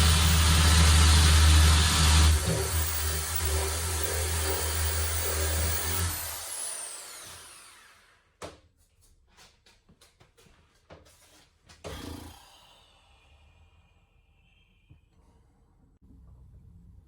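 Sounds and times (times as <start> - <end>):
power drill boring through wood: 0.0 - 8.3, 11.9 - 13.4.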